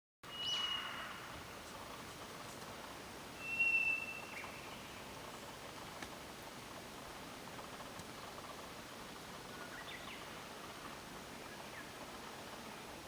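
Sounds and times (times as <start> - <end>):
bird whistling song: 0.3 - 1.3, 3.4 - 5.0, 9.5 - 10.3.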